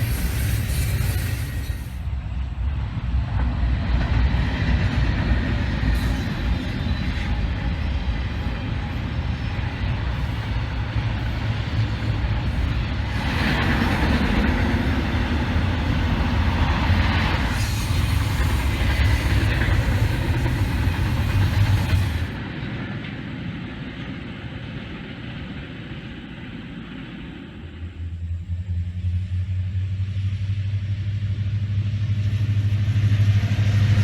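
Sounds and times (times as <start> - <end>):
train passing rumble: 0.0 - 34.0.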